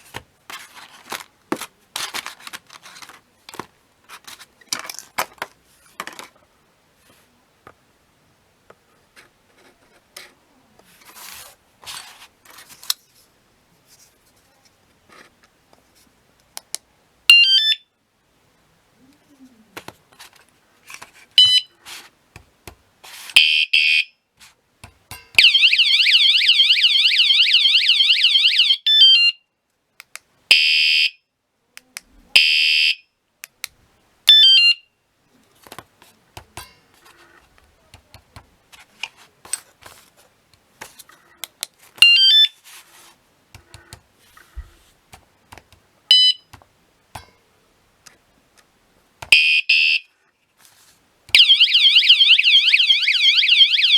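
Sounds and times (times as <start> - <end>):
alarm siren chirps and beeps: 25.4 - 29.4, 49.4 - 50.0, 51.4 - 53.9
warbling alarm tone: 51.4 - 53.9.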